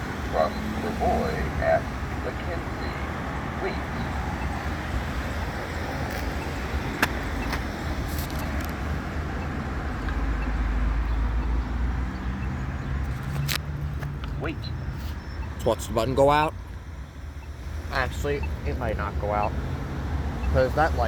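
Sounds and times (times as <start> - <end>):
low engine hum: 0.0 - 15.6
rumble of passing cars: 0.0 - 21.0.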